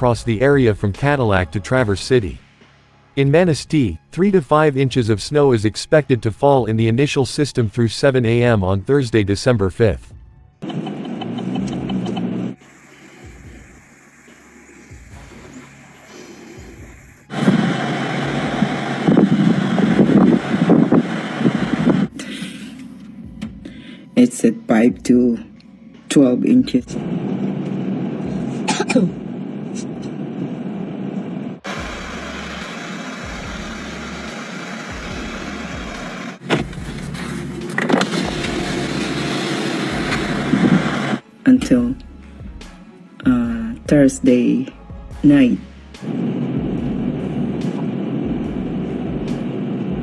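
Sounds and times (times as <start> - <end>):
gusty wind buffeting microphone: 18.4 - 22.1.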